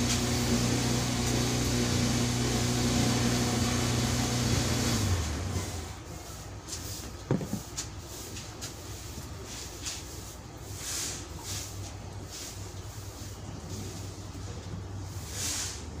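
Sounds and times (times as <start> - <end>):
electric fuel pump humming: 0.0 - 6.0.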